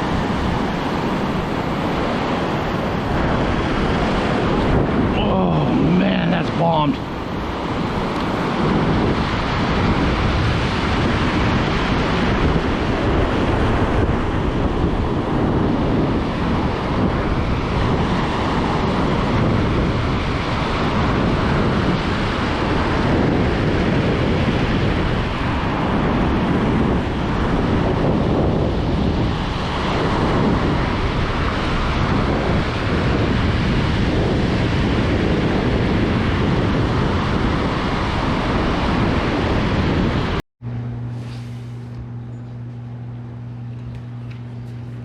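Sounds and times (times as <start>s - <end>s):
ocean surf on a beach: 0.0s - 40.4s
wind buffeting microphone: 0.0s - 40.4s.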